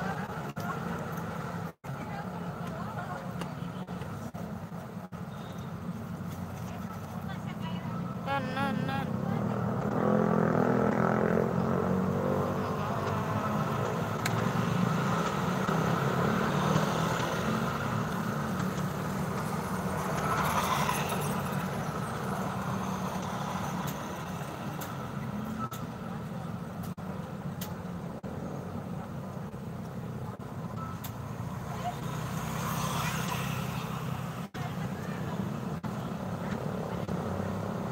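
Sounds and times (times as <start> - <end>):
traffic engines running: 0.0 - 37.9.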